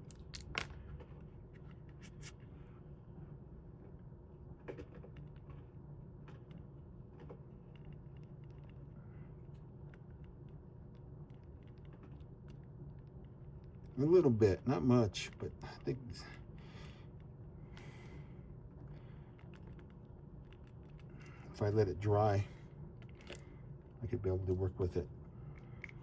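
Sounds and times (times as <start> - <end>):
low steady hum: 0.0 - 26.0.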